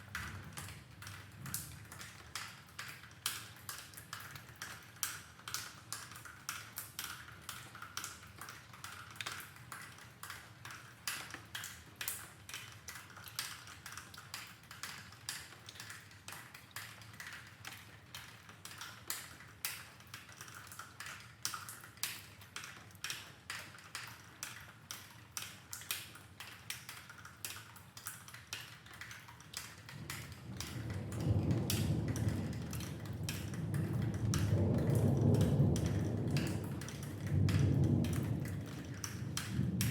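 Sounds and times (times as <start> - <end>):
rainwater dripping: 0.0 - 39.9
distant thunder rumble: 30.0 - 39.9.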